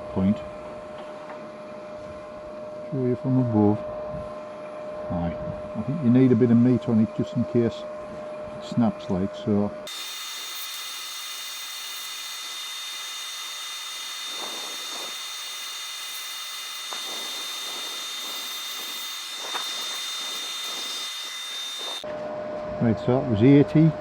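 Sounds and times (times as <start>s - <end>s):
abrasive sanding hiss: 9.9s - 22.0s
power sander whining: 9.9s - 22.1s.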